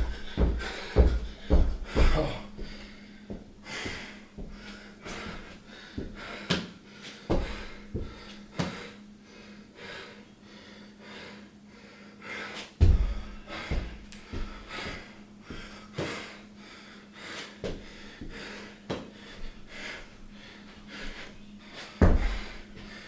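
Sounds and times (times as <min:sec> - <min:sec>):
faint steady hum: 0:00.0 - 0:23.0
heavy breathing: 0:00.0 - 0:23.0
dull thumps: 0:12.8 - 0:14.5, 0:22.0 - 0:22.5.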